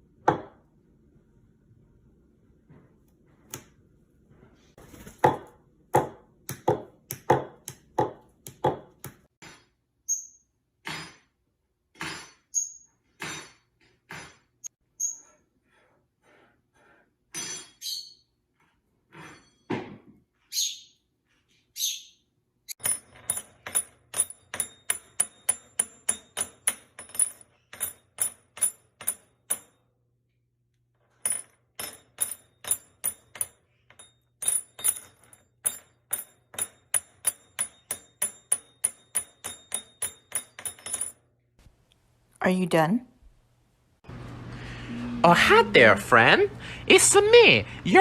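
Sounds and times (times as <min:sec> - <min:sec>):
sharp ringing taps: 0:31.8 - 0:41.2.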